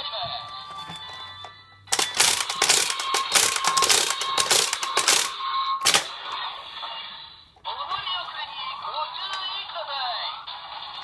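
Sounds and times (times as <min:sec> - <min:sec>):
toy crackling blasts: 0:01.9 - 0:06.2
toy sharp bang: 0:01.9 - 0:06.2.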